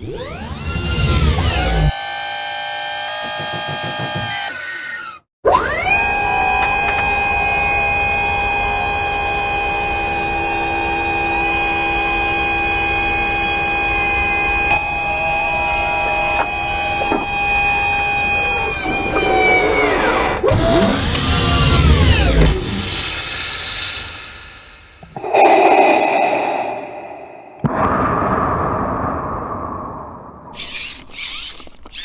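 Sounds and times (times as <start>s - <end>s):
machinery whine: 5.6s - 24.0s.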